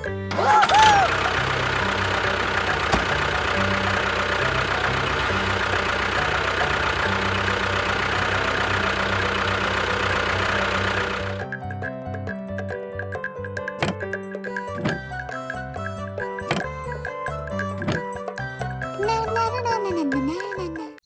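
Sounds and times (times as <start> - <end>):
background music: 0.0 - 21.0
machine running: 0.3 - 11.4.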